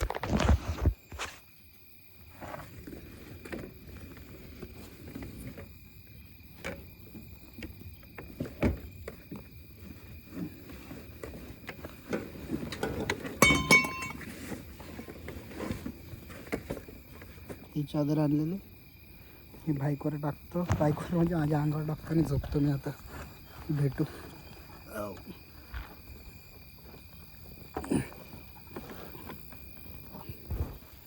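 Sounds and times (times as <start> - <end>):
insect trills: 0.0 - 31.0
handling and rustling: 7.8 - 17.7
metallic clinking ring: 13.4 - 14.2.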